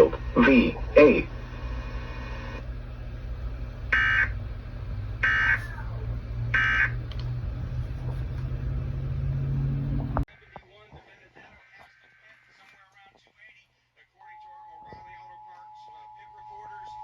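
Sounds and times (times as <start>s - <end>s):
low hum: 0.0s - 10.3s.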